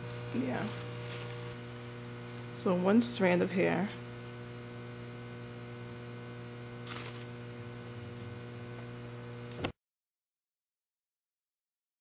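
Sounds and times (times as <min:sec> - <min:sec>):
electrical mains hum: 0:00.0 - 0:09.8
click: 0:09.5 - 0:09.8.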